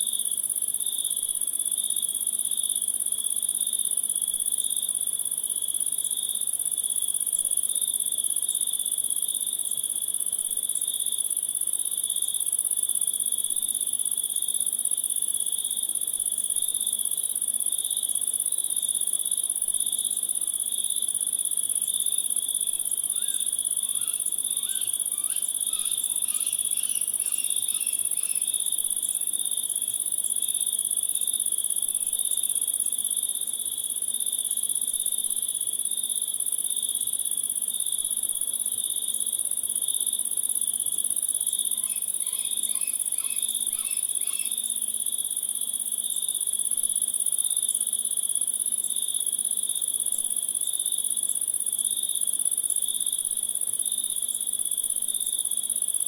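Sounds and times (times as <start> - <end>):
crickets trilling: 21.0 - 33.5, 39.6 - 49.5.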